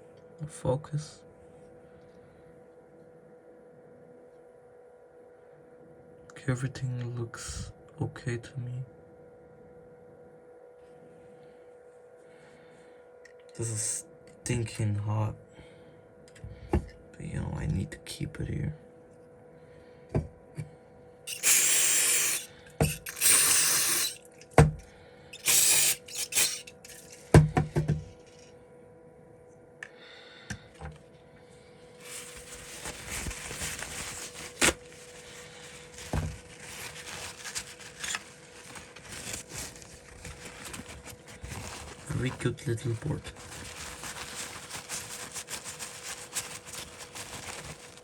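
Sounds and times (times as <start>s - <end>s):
loud hissing bursts: 21.3s - 24.2s, 25.4s - 26.7s.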